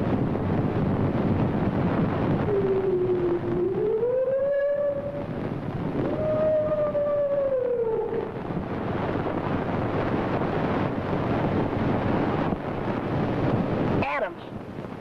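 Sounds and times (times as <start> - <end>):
film soundtrack hiss: 0.0 - 15.0
wolf-like howl: 2.5 - 5.4, 6.0 - 8.4.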